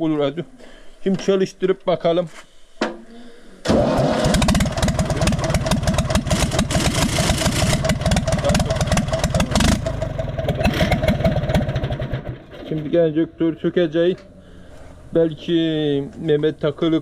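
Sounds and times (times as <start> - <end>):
diesel tractor engine knocking: 4.5 - 12.6.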